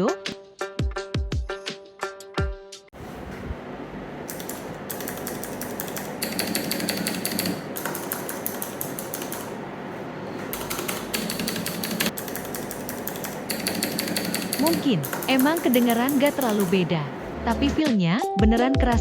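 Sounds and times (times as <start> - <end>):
mechanical keyboard typing: 4.3 - 9.6, 10.5 - 16.9.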